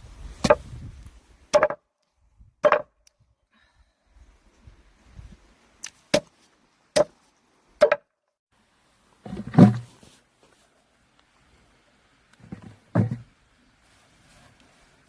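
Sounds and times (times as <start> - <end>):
axe chopping root: 1.5 - 1.8.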